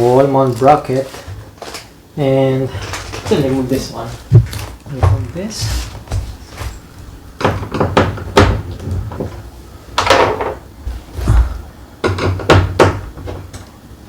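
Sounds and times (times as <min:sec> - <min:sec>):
scraping rustle: 0:02.6 - 0:07.0.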